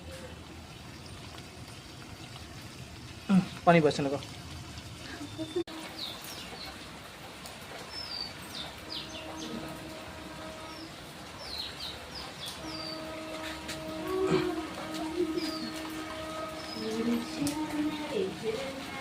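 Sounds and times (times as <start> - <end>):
small birds chirping: 5.0 - 6.9, 7.8 - 14.0, 14.6 - 18.9.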